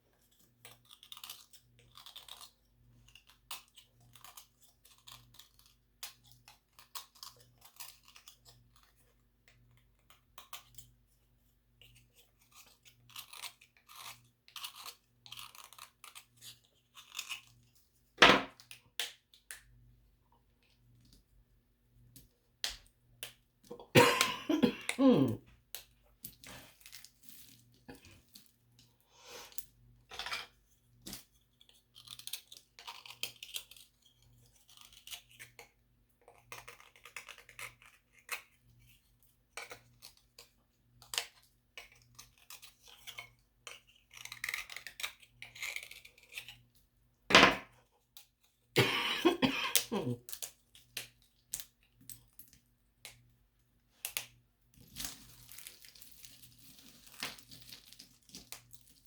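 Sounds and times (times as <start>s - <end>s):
scratchy crinkling: 54.8s - 59.0s.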